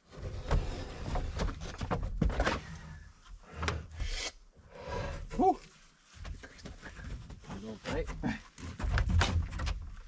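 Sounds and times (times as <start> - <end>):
wooden boards knocking and scraping: 0.1 - 3.9, 6.2 - 10.0.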